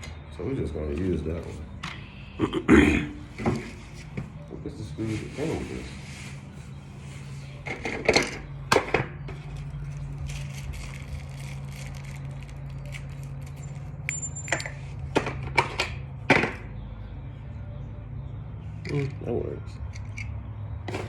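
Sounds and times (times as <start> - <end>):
small parts clicking and rattling: 9.4 - 15.8, 19.9 - 20.4.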